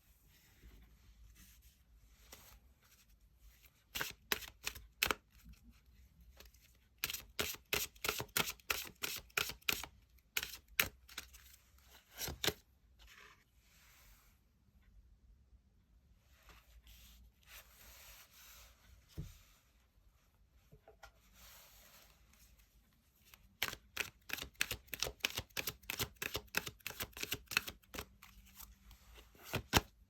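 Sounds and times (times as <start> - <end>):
cards clicking and tapping: 23.6 - 28.1
cards rubbing: 23.6 - 28.1.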